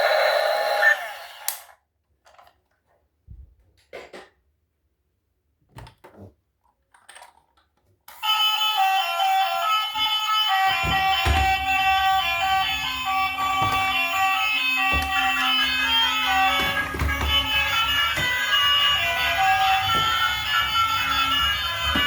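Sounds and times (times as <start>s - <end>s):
music: 8.2s - 22.0s
faint knocks and clicks: 10.7s - 22.0s.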